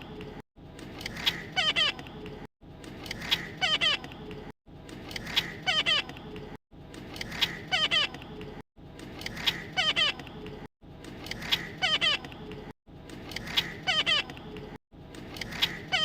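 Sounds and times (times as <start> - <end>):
parrot squeaking and chirping: 1.0 - 2.0, 3.1 - 4.1, 5.2 - 6.1, 7.2 - 8.2, 9.3 - 10.2, 11.3 - 12.3, 13.3 - 14.4, 15.5 - 16.0.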